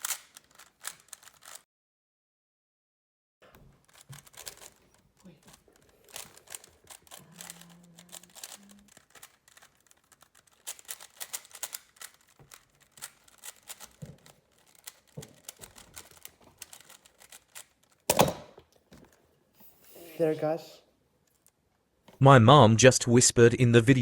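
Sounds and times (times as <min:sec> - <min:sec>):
plastic puzzle cube clicking: 0:00.0 - 0:01.6, 0:03.8 - 0:18.8.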